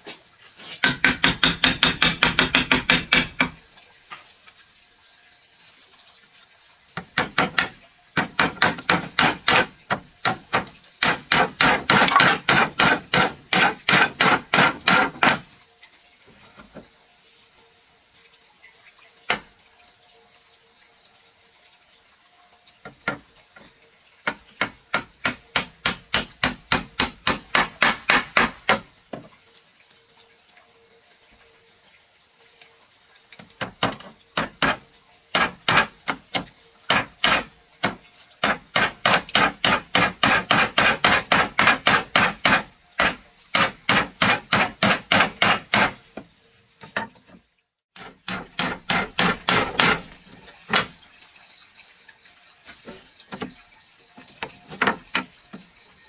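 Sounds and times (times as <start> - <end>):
insect drone: 0.0 - 56.0
hammer striking wood: 0.8 - 3.6, 7.0 - 15.4, 24.3 - 28.9, 33.6 - 34.8, 35.4 - 46.0, 48.0 - 50.9.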